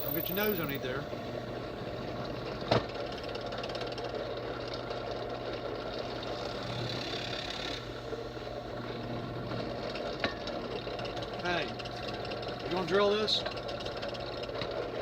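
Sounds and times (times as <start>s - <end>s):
electric motor humming: 6.0s - 9.9s.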